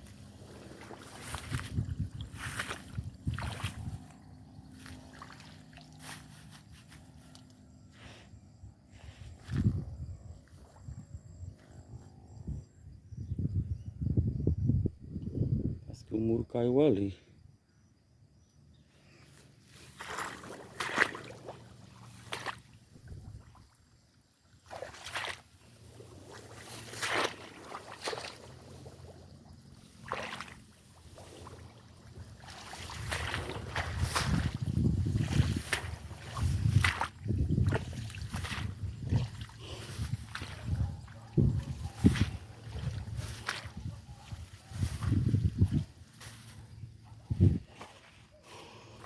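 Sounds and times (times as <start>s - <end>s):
water sloshing: 0.0s - 6.5s, 19.8s - 23.8s, 24.4s - 46.5s
squelching through wet ground: 0.0s - 12.3s, 19.0s - 49.0s.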